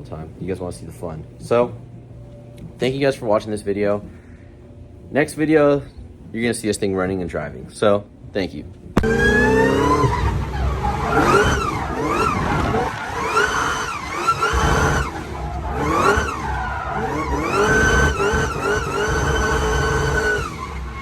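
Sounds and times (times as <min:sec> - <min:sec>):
car engine revving: 0:09.0 - 0:21.0.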